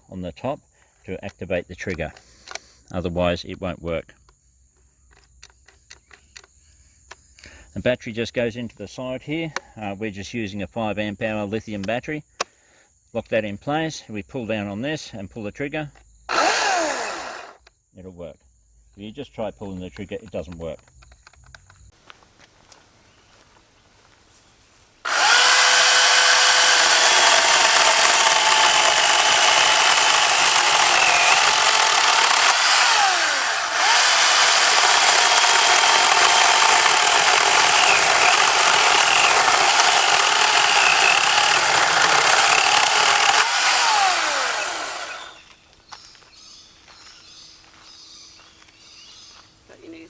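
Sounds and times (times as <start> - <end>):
electric chainsaw whine: 16.3 - 17.6, 25.0 - 45.5.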